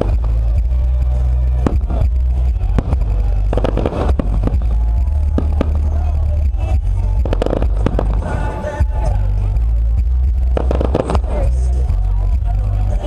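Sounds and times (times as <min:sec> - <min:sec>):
firework crackle: 0:00.0 - 0:13.0
deep rumble of firework booms: 0:01.5 - 0:12.0
sharp firework bangs: 0:01.6 - 0:09.0.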